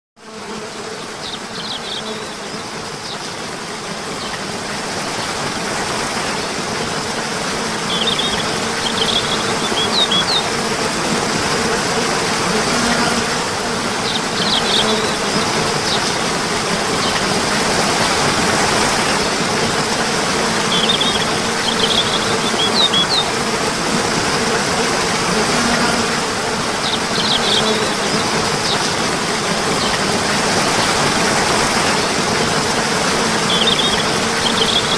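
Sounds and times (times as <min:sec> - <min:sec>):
running water: 0:00.4 - 0:34.9
high bird chirps: 0:07.9 - 0:10.4.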